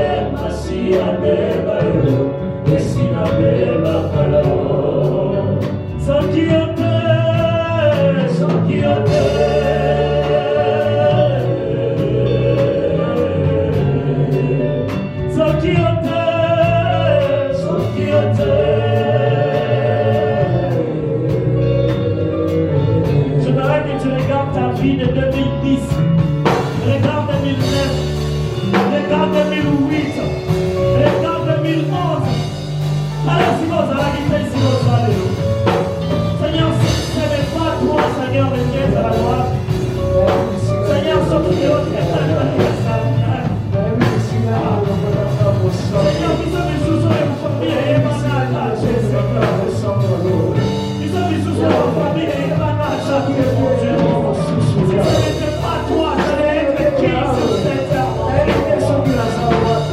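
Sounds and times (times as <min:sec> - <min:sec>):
bass: 0:00.0 - 0:59.9
live worship band music: 0:00.0 - 0:59.9
steady drum beat: 0:00.0 - 0:59.9.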